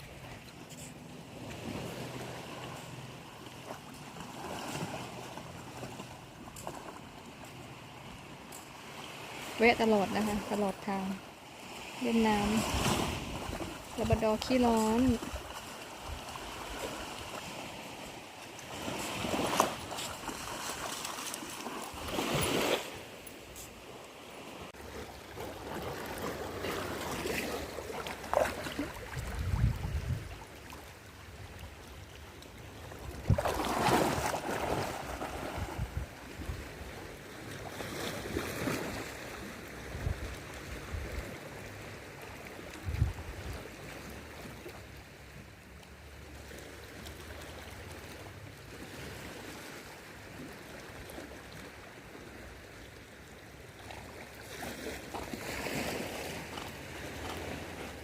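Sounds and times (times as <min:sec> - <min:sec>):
sea waves washing onto beach: 0:00.0 - 0:45.0.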